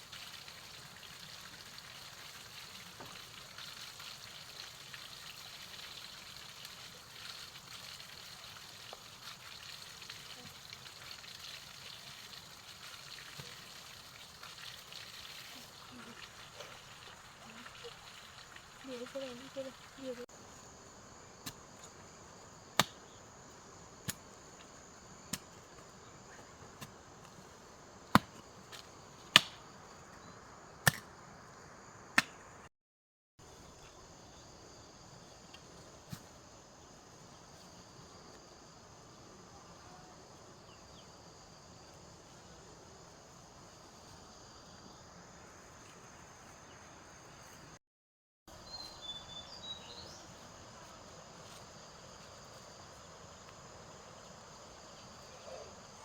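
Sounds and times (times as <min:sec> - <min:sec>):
insects chirring: 0:00.0 - 0:32.7, 0:33.4 - 0:47.8, 0:48.5 - 0:56.0
faint chirps: 0:48.6 - 0:50.5, 0:55.0 - 0:56.0.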